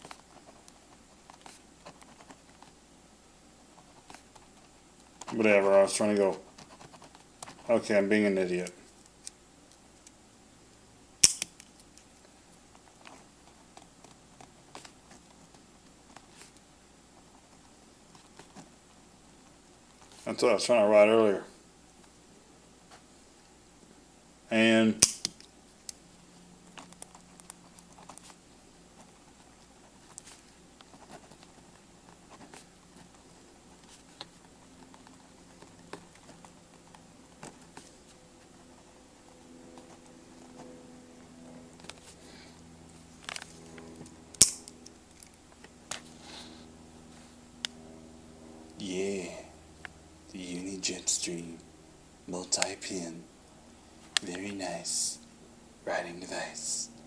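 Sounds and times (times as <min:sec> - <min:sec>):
pen mechanism click: 0:11.2 - 0:11.5
pen scratching on paper: 0:29.0 - 0:34.4.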